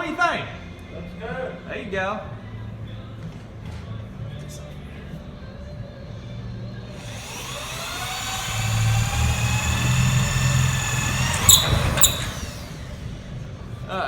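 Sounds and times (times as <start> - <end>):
power drill whining: 6.9 - 13.3.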